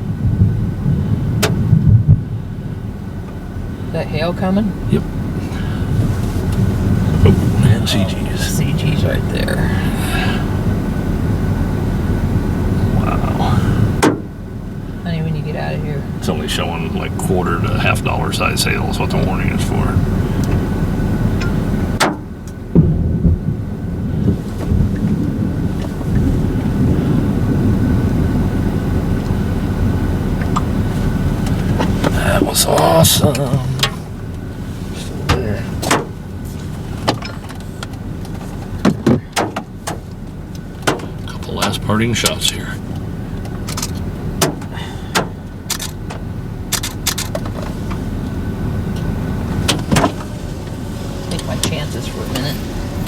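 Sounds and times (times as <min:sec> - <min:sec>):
wind noise: 0:00.0 - 0:03.9, 0:19.9 - 0:41.2
vehicle rumble from inside cabin: 0:00.0 - 0:53.0.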